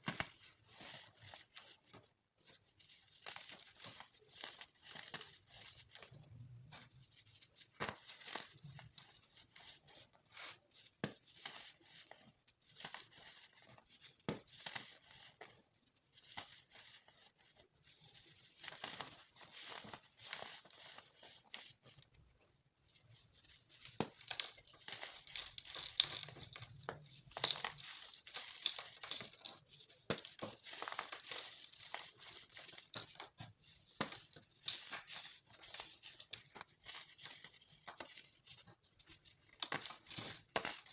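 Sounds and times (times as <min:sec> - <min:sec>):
baking soda chunks crackling: 0:23.6 - 0:40.9.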